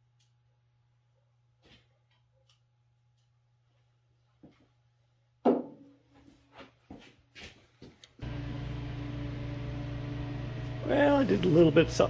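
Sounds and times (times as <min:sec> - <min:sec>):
steady mechanical hum: 0:08.2 - 0:12.0.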